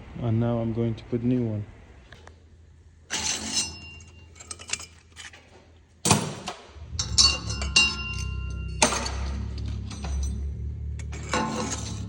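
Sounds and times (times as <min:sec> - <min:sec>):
metal tools clinking and knocking: 0:03.1 - 0:05.5, 0:06.1 - 0:12.0
low steady hum: 0:06.2 - 0:12.0.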